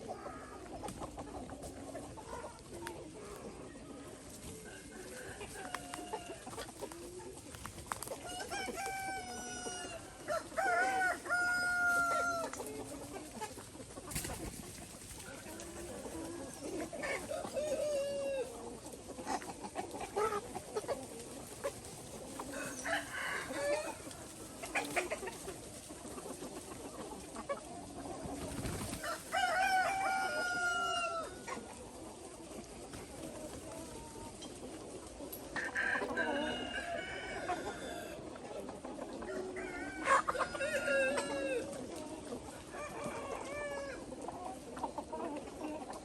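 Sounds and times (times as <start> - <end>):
chickens clucking: 0.0 - 46.0
roosters crowing: 4.5 - 6.8, 8.0 - 13.0, 15.2 - 18.6, 22.3 - 25.2, 28.4 - 31.7, 35.5 - 38.4, 39.2 - 41.9, 42.5 - 44.1.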